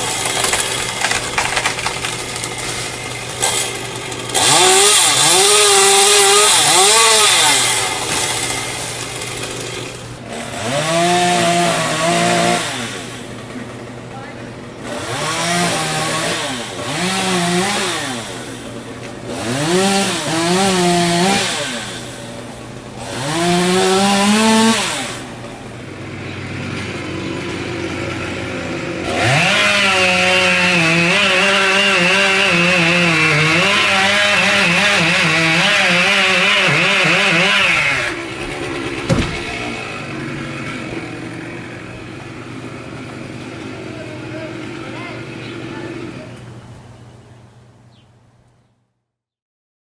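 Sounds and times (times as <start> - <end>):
chainsaw revving and idling: 0.0 - 46.8
sharp knock: 38.4 - 39.6.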